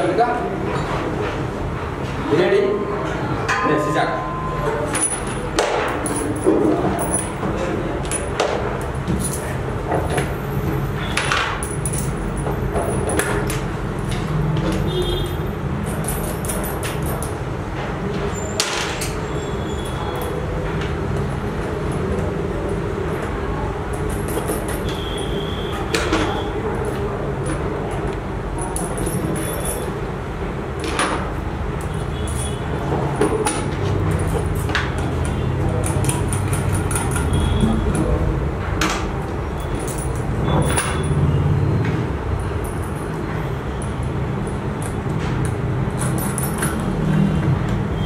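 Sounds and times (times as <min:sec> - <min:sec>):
room hum: 0:00.0 - 0:48.0
small metal parts clinking: 0:04.3 - 0:10.2, 0:11.0 - 0:14.8, 0:15.8 - 0:17.4, 0:23.9 - 0:26.2, 0:31.8 - 0:37.9, 0:39.6 - 0:41.2, 0:42.4 - 0:47.0.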